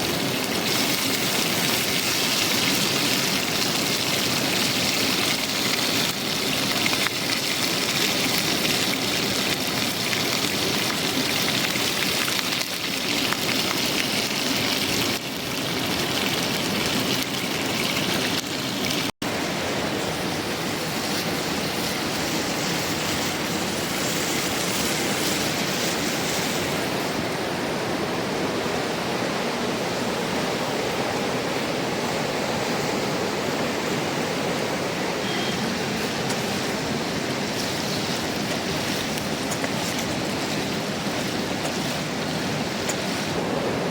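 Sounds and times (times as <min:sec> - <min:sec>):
river rushing: 0:19.2 - 0:43.9.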